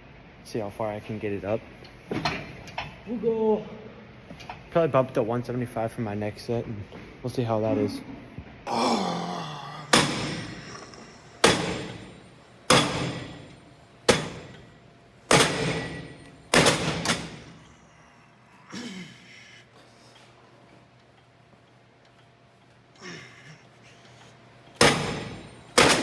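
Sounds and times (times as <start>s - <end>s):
gym weights clanking: 9.9s - 17.7s.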